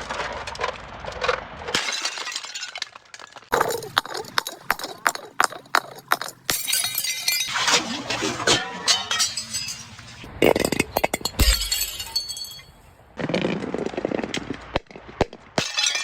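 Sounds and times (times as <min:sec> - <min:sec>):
heavy crash: 0:00.0 - 0:12.8
glass shattering: 0:01.7 - 0:12.8, 0:15.6 - 0:16.0
glass bottles clinking: 0:01.8 - 0:12.8, 0:15.6 - 0:16.0.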